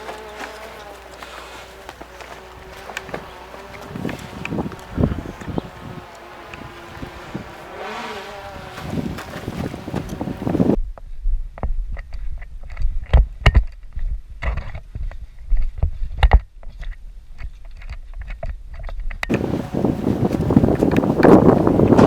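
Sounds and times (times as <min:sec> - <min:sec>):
heavy thumps: 0:00.0 - 0:10.8.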